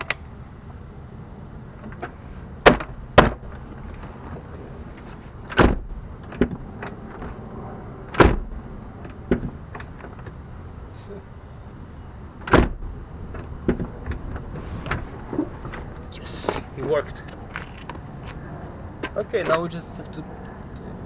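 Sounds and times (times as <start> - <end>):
car door latch clunking: 1.8 - 3.6, 5.4 - 7.4, 8.1 - 10.4, 12.4 - 16.0.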